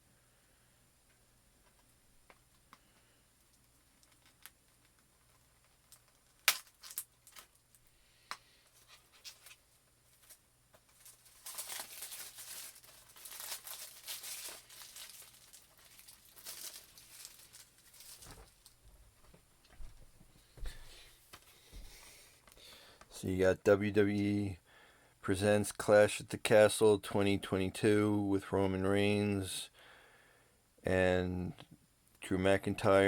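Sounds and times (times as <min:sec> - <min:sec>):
packaging crinkling and tearing: 0:04.0 - 0:07.8, 0:08.8 - 0:18.8.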